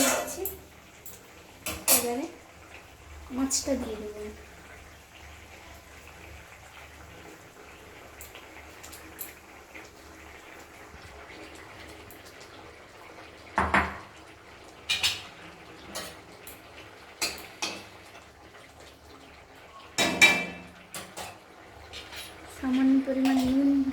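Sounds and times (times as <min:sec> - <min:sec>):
metal spoon clattering against pan: 0:00.0 - 0:02.2.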